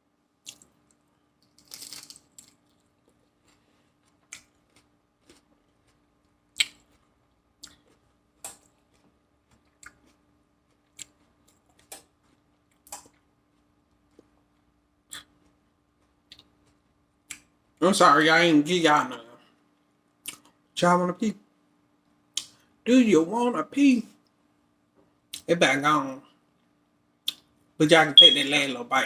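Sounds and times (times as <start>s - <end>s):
faint steady hum: 0.0s - 29.0s
crisp chewing crunches: 0.4s - 13.2s
mouth clicks: 6.6s - 6.8s.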